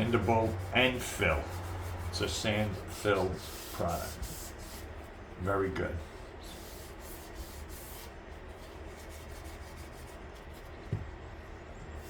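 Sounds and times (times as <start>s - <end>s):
sandpaper rubbing: 0.0s - 4.9s, 6.5s - 10.6s.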